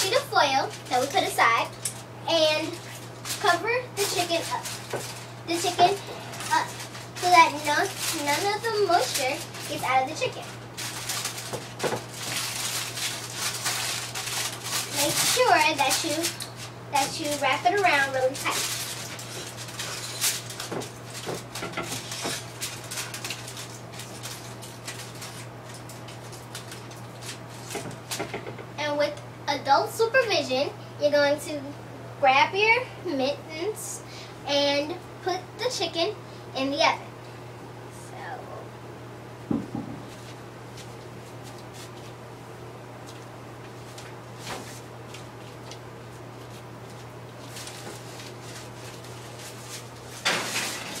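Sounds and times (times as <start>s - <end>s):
aluminium foil crinkling: 0.0s - 28.6s, 43.0s - 51.0s
low steady hum: 0.0s - 51.0s
dull thumps in oven: 39.5s - 40.1s.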